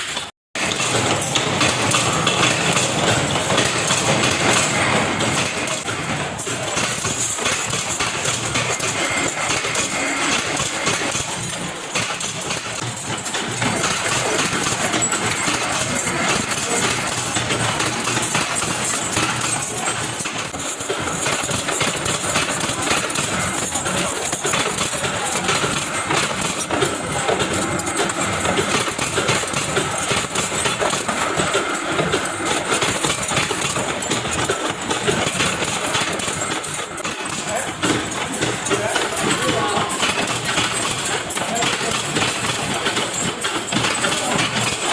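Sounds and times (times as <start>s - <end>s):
rapid metallic clicking and clatter: 0.0s - 44.9s.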